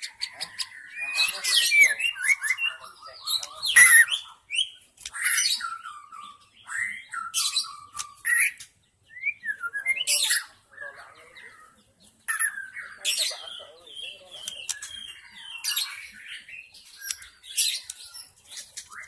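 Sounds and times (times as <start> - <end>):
bird singing varied whistles: 3.4 - 10.5.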